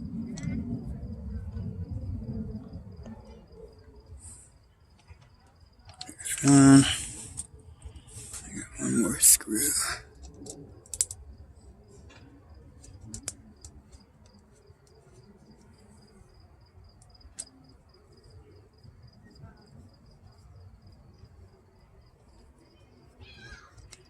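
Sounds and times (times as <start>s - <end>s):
insects chirping: 0.0s - 24.0s
light clicks and taps: 10.2s - 11.2s.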